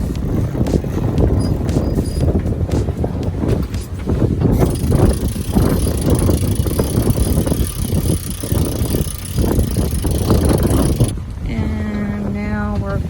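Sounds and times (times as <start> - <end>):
wind buffeting microphone: 0.0 - 13.0
boat engines droning: 4.5 - 13.0.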